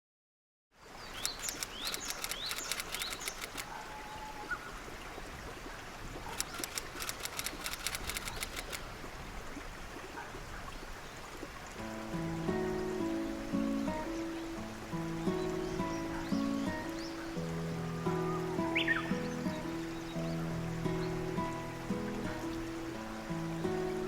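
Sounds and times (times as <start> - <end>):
bird chirping: 1.0 - 3.8, 15.3 - 21.6
rapid sharp clicking: 1.2 - 3.7, 6.4 - 8.8.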